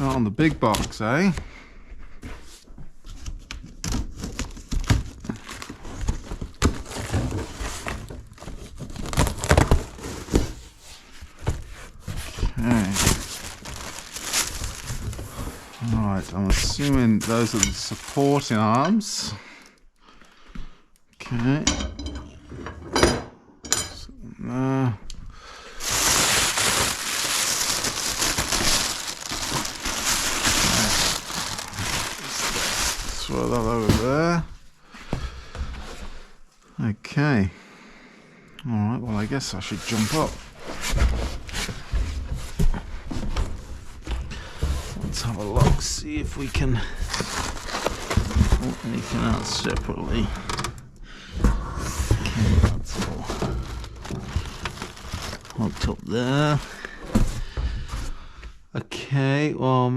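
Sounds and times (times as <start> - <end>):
wrapping crinkling and tearing: 3.3 - 18.8, 25.8 - 34.5, 46.3 - 49.8, 52.2 - 57.1
cardboard box knocks and scrapes: 33.5 - 34.4.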